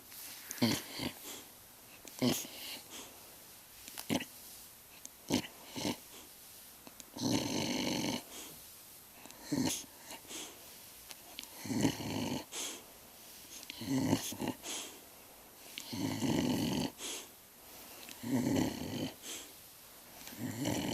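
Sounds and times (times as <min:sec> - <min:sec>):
short snorts: 0:00.4 - 0:01.5, 0:02.1 - 0:03.2, 0:03.9 - 0:04.4, 0:05.2 - 0:06.3, 0:07.1 - 0:08.6, 0:09.4 - 0:10.6, 0:11.4 - 0:15.0, 0:15.7 - 0:17.4, 0:18.0 - 0:19.6, 0:20.2 - 0:20.9
pet snoring: 0:00.5 - 0:01.5, 0:02.2 - 0:03.1, 0:04.0 - 0:04.3, 0:05.2 - 0:06.3, 0:07.1 - 0:08.6, 0:09.3 - 0:10.6, 0:11.5 - 0:12.8, 0:13.6 - 0:15.0, 0:15.8 - 0:17.3, 0:18.1 - 0:19.5, 0:20.2 - 0:20.9.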